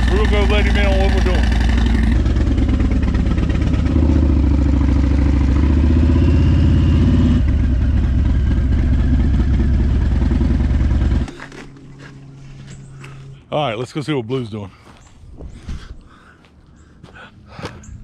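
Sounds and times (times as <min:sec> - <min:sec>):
motorcycle engine running: 0:00.0 - 0:13.4.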